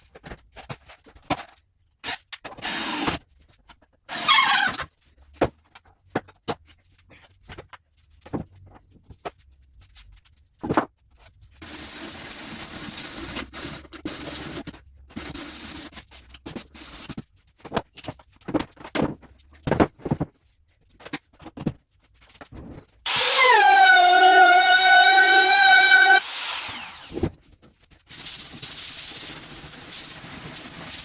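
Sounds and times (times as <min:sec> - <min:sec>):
power tool working wood: 0:23.1 - 0:27.3.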